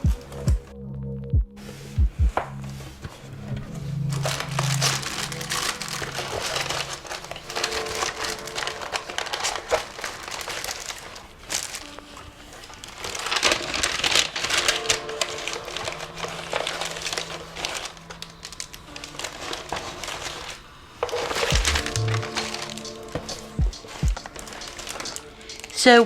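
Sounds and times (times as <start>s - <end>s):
background music with bass: 0.0s - 6.0s, 21.5s - 25.8s
packaging crinkling and rustling: 4.0s - 26.0s.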